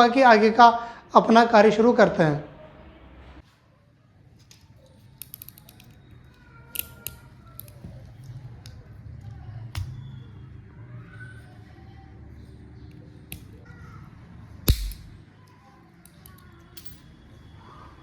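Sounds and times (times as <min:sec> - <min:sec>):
low steady hum: 0:05.1 - 0:17.7
sharp clicks: 0:14.7 - 0:15.2.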